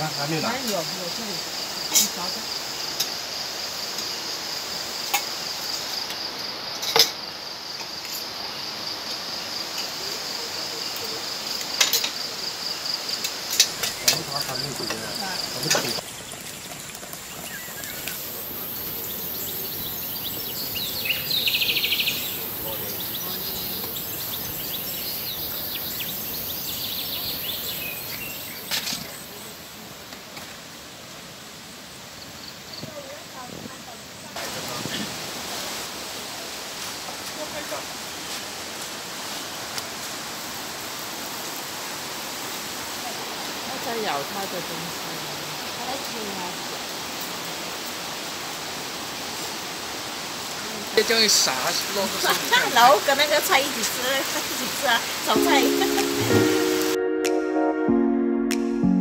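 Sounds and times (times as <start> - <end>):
insect chirring: 0.0 - 29.3
high bird chirps: 17.2 - 28.7
river rushing: 34.2 - 57.0.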